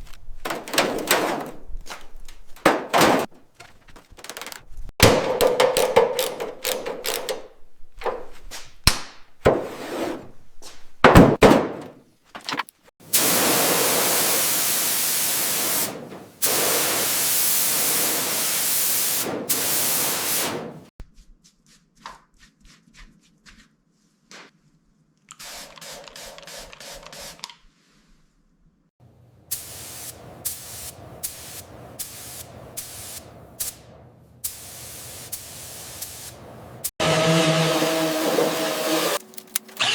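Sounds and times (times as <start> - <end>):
clicking and rattling: 0.0 - 8.5.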